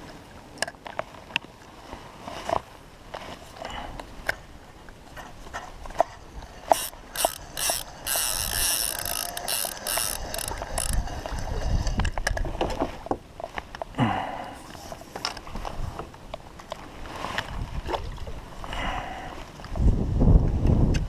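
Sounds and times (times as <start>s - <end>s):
fishing reel gears whirring and clicking: 6.6s - 11.2s
wind rumble on microphone: 10.0s - 13.2s, 15.4s - 16.2s, 16.9s - 21.0s.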